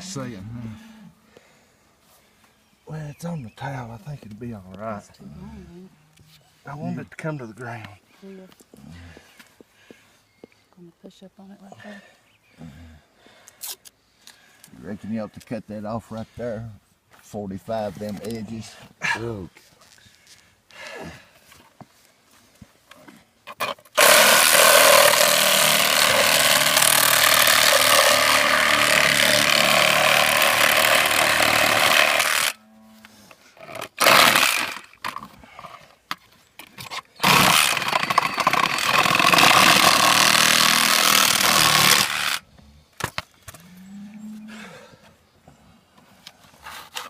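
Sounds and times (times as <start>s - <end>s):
power tool cutting pipe: 23.6s - 32.6s, 33.7s - 34.9s, 37.2s - 42.4s.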